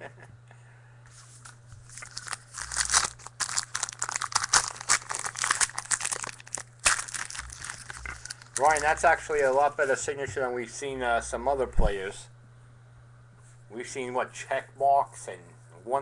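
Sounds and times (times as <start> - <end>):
foil wrapper crinkling and tearing: 1.8 - 9.7.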